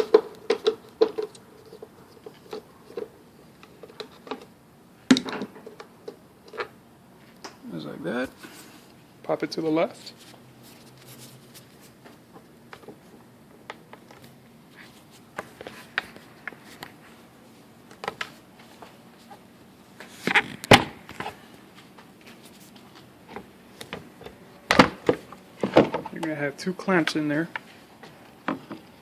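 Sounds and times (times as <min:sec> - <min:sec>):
plastic clatter: 0:00.0 - 0:04.5.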